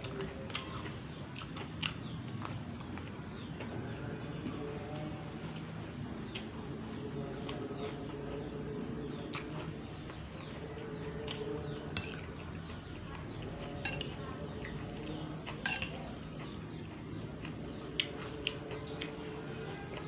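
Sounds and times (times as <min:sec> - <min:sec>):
chewing: 0:00.0 - 0:20.0
utensils clinking against dish: 0:11.9 - 0:12.4, 0:13.8 - 0:14.2, 0:15.6 - 0:16.2.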